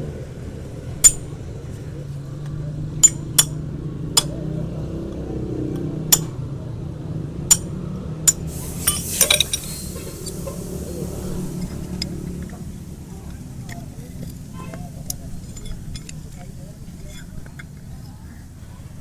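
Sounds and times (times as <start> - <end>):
metal hoof-trimming tools clinking: 2.4 - 3.6, 8.3 - 18.2
scraping hiss: 8.4 - 17.6.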